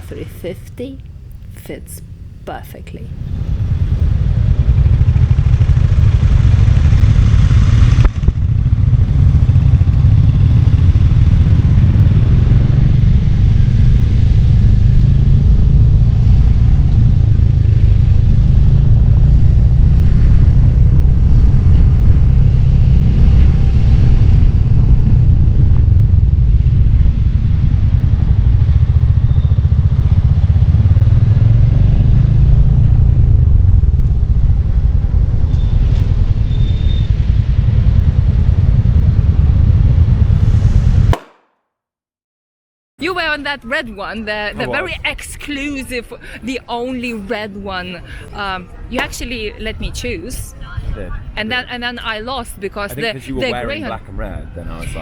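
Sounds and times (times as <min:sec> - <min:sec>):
motorcycle engine deep rumble: 0:00.0 - 0:41.2.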